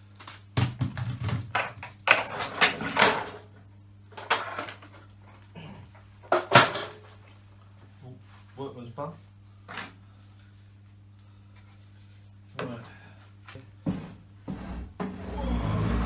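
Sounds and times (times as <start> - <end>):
metal tools clattering: 1.6 - 3.5, 6.3 - 7.4.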